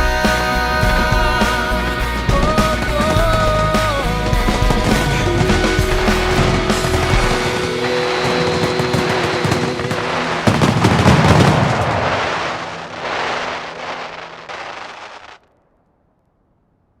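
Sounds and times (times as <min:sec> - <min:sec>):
fireworks crackling and popping: 0:00.0 - 0:15.9.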